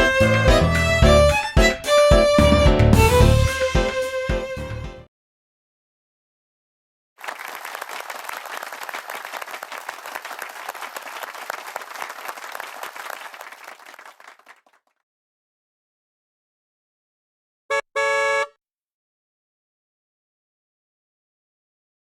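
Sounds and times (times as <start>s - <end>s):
hands clapping: 7.2s - 14.8s.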